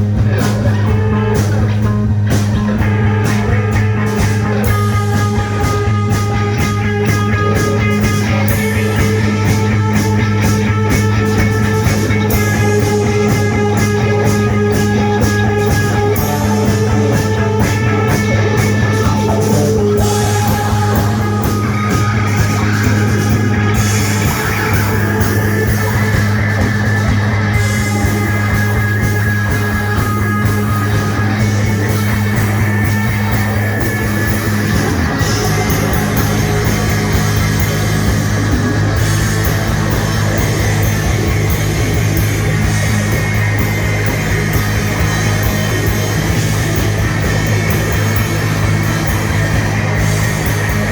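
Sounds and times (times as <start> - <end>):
drum kit: 0.0 - 50.9
electric guitar: 0.0 - 50.9
low bass drone: 0.0 - 50.9.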